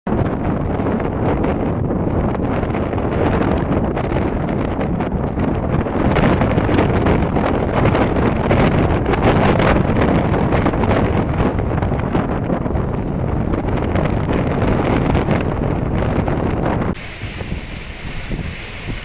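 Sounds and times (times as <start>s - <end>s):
wind buffeting microphone: 0.1s - 19.0s
rain falling: 17.0s - 19.0s.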